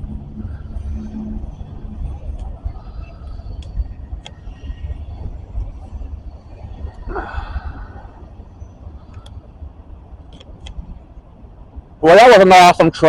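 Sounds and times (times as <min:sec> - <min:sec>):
freight train rumbling past: 0:00.0 - 0:09.0.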